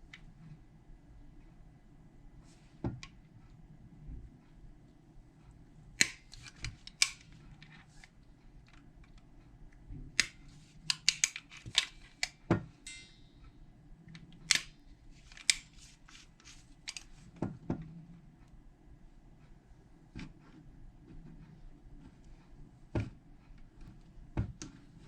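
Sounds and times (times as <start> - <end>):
lock parts clicking: 6.0 - 7.3, 10.2 - 13.2.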